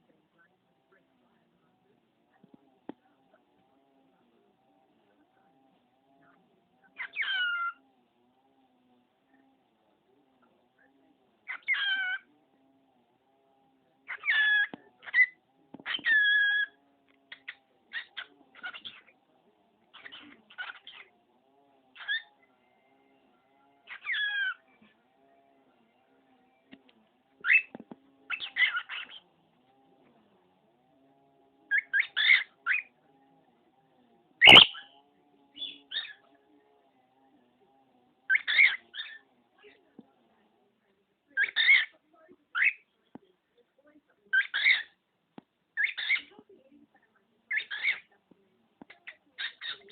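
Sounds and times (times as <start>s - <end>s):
cockatiel calling: 6.9s - 7.8s, 11.5s - 12.3s, 14.1s - 19.1s, 19.9s - 21.1s, 22.0s - 22.3s, 23.8s - 24.6s, 27.4s - 29.2s, 31.7s - 32.9s, 34.4s - 36.3s, 38.3s - 39.2s, 41.4s - 41.9s, 42.5s - 42.8s, 44.3s - 45.0s, 45.8s - 46.3s, 47.5s - 48.1s, 48.9s - 49.9s.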